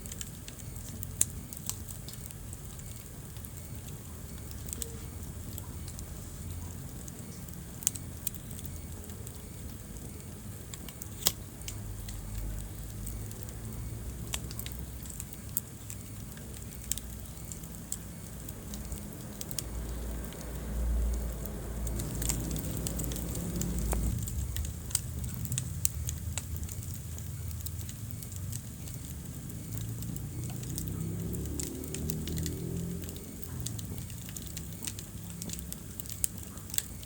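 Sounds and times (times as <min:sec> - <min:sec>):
fire pops and snaps: 0:00.0 - 0:37.0
low rumble of flames: 0:00.0 - 0:37.0.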